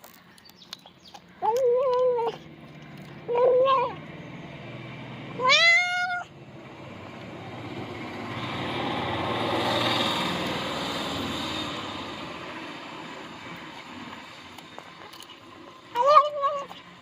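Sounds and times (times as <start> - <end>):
cat meowing: 1.4 - 2.4, 3.3 - 4.0, 5.4 - 6.3, 15.9 - 16.8.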